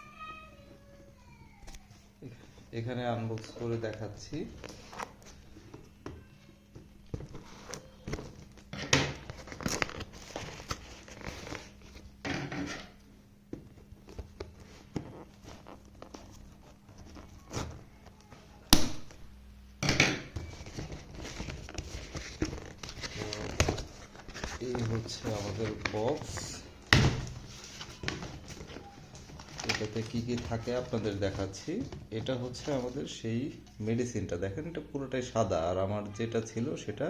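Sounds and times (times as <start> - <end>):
packaging crinkling and tearing: 7.4 - 12.1, 20.4 - 32.9.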